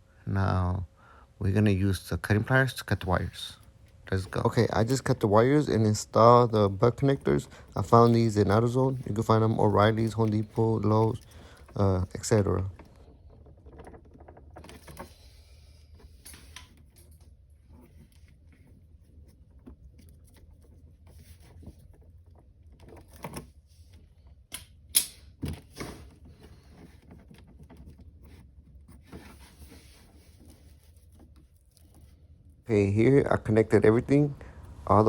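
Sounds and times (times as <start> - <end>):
faint low hum: 0.0 - 35.0.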